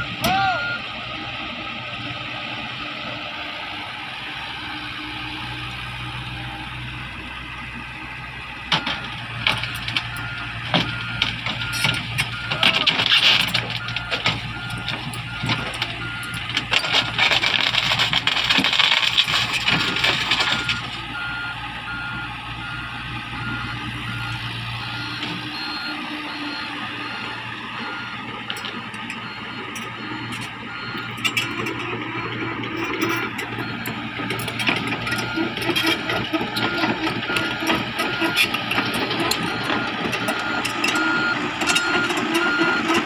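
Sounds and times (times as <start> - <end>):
excavator engine running: 0.0 - 43.0
travel alarm beeping: 20.5 - 43.0.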